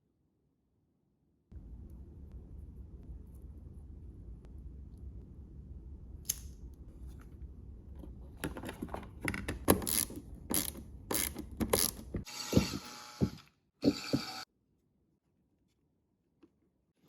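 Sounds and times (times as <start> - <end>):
low hum: 1.5 - 8.3
small mechanism clicking and rattling: 9.2 - 12.2.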